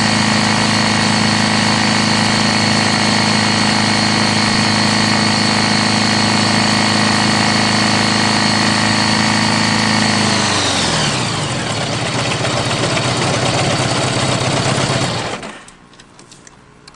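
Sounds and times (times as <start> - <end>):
motorcycle engine running: 0.0 - 15.5.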